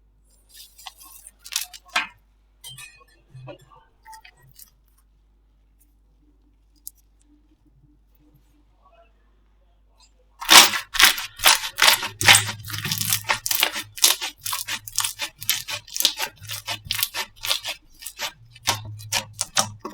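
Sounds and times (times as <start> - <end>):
slime crackling and popping: 0.8 - 2.0, 10.4 - 19.9.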